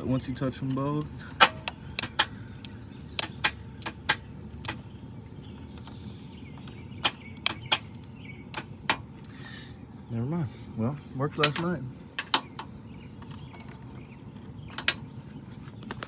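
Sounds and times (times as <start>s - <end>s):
wire ends clicking on terminals: 0.0s - 4.8s, 5.5s - 9.3s, 11.4s - 13.9s.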